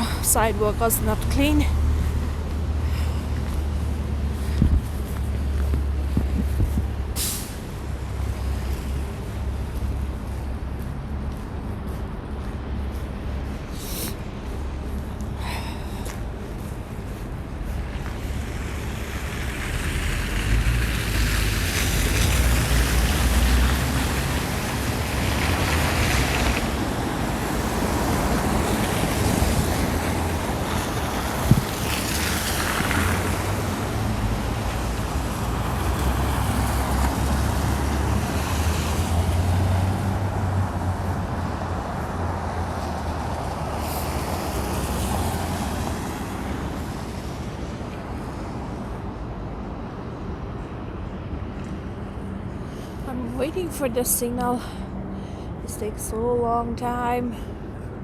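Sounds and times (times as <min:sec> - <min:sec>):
car engines rumbling: 0:00.0 - 0:58.0
wind buffeting microphone: 0:03.4 - 0:07.2, 0:28.6 - 0:32.2
tyres hissing on wet road: 0:07.2 - 0:08.9, 0:18.2 - 0:41.0, 0:42.2 - 0:47.5.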